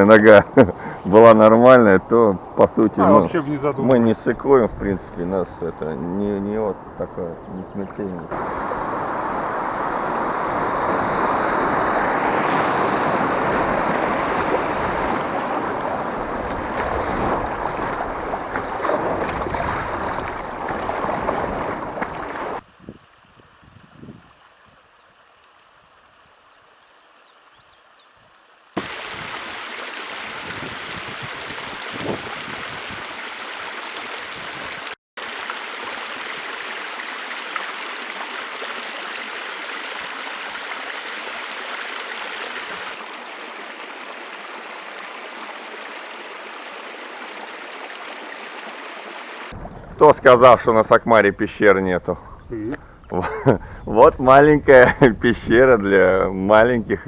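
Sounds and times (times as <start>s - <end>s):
river rushing over rapids: 8.2s - 22.6s.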